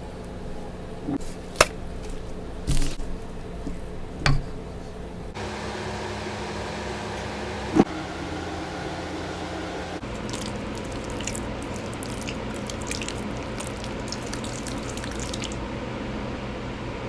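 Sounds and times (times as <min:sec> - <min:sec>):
background hum: 0:00.0 - 0:17.0
wet chalk crackling in water: 0:10.0 - 0:15.7.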